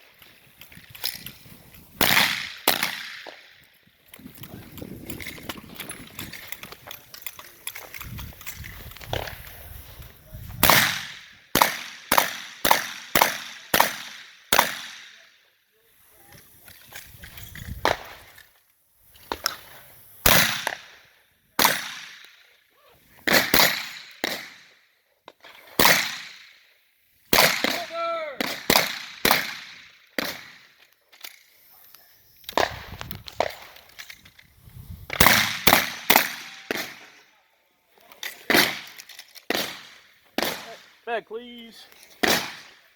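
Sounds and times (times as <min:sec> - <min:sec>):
shotgun shots: 0:02.0 - 0:03.3, 0:10.6 - 0:15.3, 0:20.2 - 0:20.8, 0:21.6 - 0:22.2, 0:23.2 - 0:24.6, 0:25.8 - 0:26.4, 0:27.3 - 0:30.6, 0:35.1 - 0:37.1, 0:38.5 - 0:41.0, 0:42.2 - 0:42.8.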